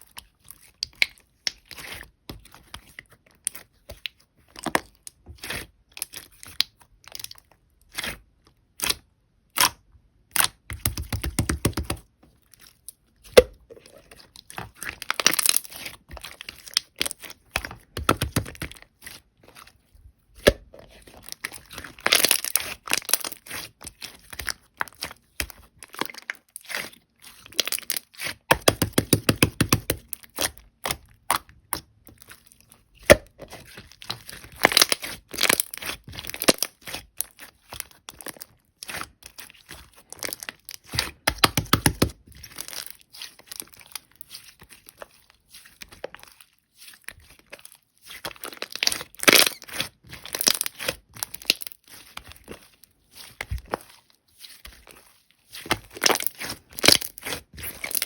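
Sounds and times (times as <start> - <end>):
slime squelch: 0.0 - 58.0
slime crackling and popping: 8.8 - 12.0, 14.4 - 19.3, 20.4 - 26.8, 27.5 - 32.0, 33.0 - 45.0, 48.1 - 53.8, 55.5 - 58.0.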